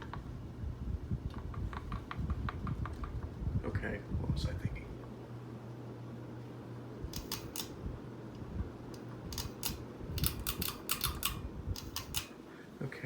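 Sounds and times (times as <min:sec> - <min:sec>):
ceiling fan motor hum: 0:00.0 - 0:13.0
sharp clicks: 0:07.1 - 0:07.8, 0:08.9 - 0:12.3.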